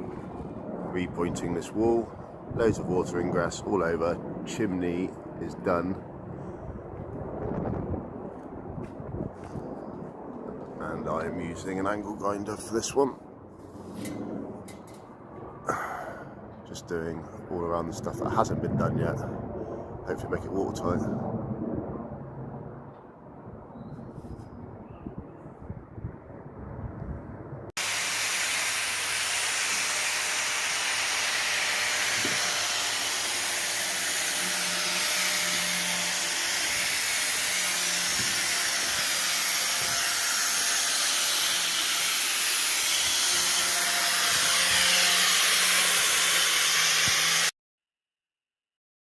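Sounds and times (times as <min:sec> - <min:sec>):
angle grinder cutting mortar: 0:27.8 - 0:47.5.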